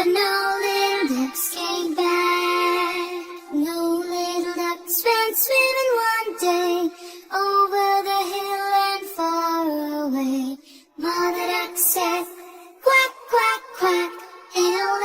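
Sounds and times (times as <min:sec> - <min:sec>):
child-like voice singing over music: 0:00.0 - 0:10.4, 0:11.0 - 0:15.0.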